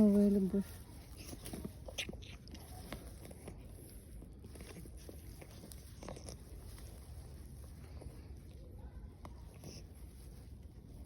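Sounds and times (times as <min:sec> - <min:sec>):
cat chewing and crunching: 0:00.0 - 0:11.0.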